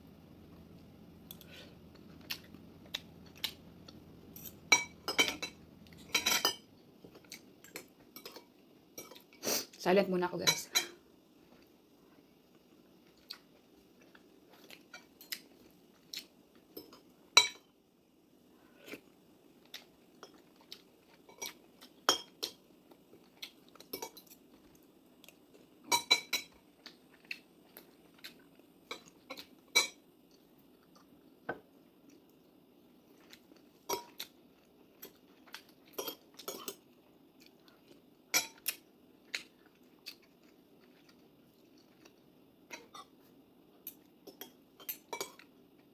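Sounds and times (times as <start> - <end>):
faint low hum: 0.0 - 45.9
cutlery clinking on dishes: 4.3 - 6.7, 35.9 - 36.8, 38.4 - 38.7, 43.9 - 45.5.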